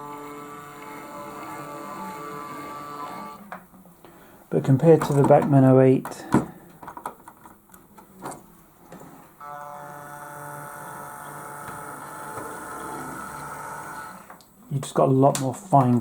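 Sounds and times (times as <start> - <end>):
model train motor whining: 0.0 - 3.4, 9.4 - 14.3.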